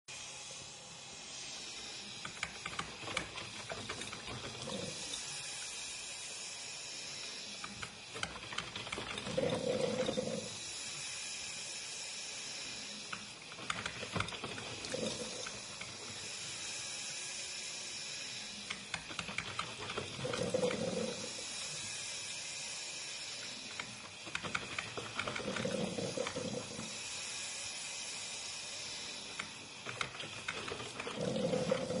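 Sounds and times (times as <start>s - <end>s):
coffeemaker hissing: 0.1s - 32.0s
coffeemaker gurgling and sputtering: 2.1s - 5.8s, 6.9s - 11.2s, 12.7s - 16.6s, 18.4s - 22.1s, 23.4s - 27.2s, 29.2s - 32.0s.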